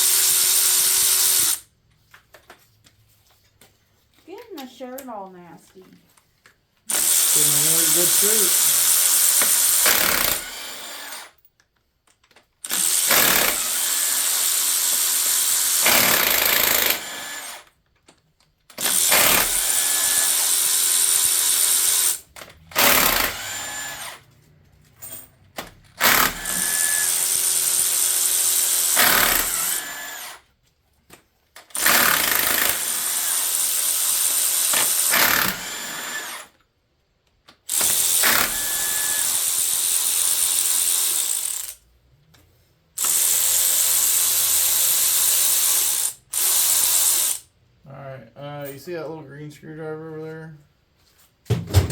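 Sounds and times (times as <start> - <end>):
power tool running in bursts: 6.9 - 11.3, 22.8 - 24.2, 26.0 - 30.4.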